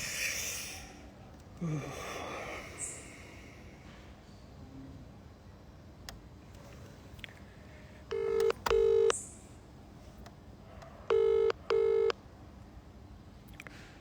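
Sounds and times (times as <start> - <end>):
telephone ringback tone: 8.1 - 9.2, 11.1 - 12.2.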